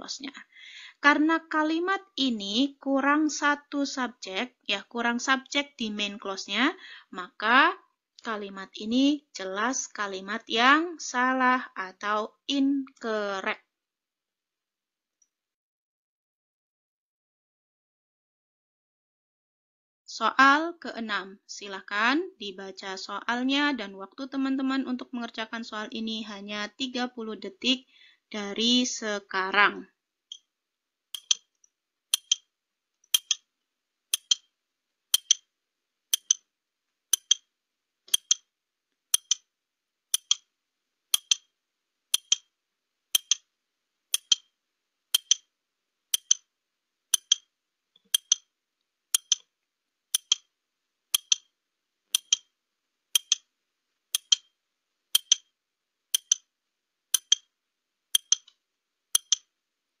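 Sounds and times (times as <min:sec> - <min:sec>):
clock ticking: 0:31.2 - 0:31.4, 0:32.1 - 0:32.5, 0:33.1 - 0:33.4, 0:34.1 - 0:34.5, 0:35.1 - 0:35.4, 0:36.1 - 0:36.4, 0:37.1 - 0:37.5, 0:38.1 - 0:38.4, 0:39.1 - 0:39.4, 0:40.1 - 0:40.4, 0:41.1 - 0:41.5, 0:42.1 - 0:42.5, 0:43.1 - 0:43.4, 0:44.1 - 0:44.5, 0:45.1 - 0:45.5, 0:46.1 - 0:46.5, 0:47.1 - 0:47.5, 0:48.1 - 0:48.5, 0:49.2 - 0:49.5, 0:50.1 - 0:50.5, 0:51.1 - 0:51.5, 0:52.1 - 0:52.5, 0:53.2 - 0:53.5, 0:54.1 - 0:54.5, 0:55.2 - 0:55.5, 0:56.2 - 0:56.5, 0:57.2 - 0:57.5, 0:58.2 - 0:58.5, 0:59.2 - 0:59.5.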